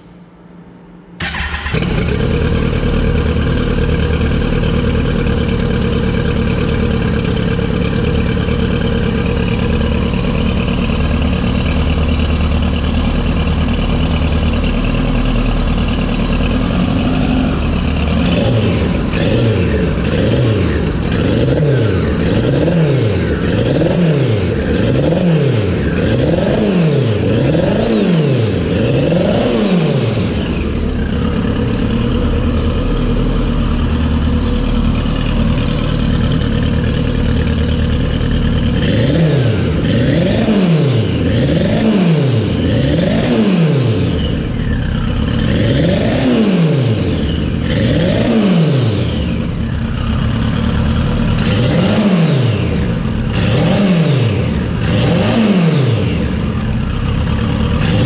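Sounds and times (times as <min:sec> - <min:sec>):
high turbo whine: 0:00.0 - 0:58.0
engine idling: 0:01.2 - 0:58.0
motorcycle engine revving: 0:01.2 - 0:58.0.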